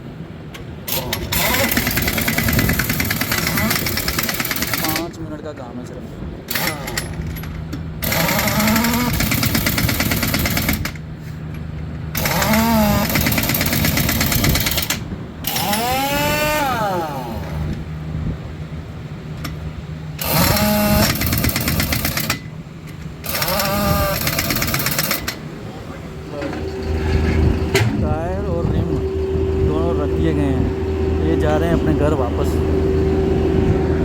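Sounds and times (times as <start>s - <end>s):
pneumatic impact wrench hammering: 0.5s - 5.1s, 6.5s - 17.9s, 20.2s - 25.4s.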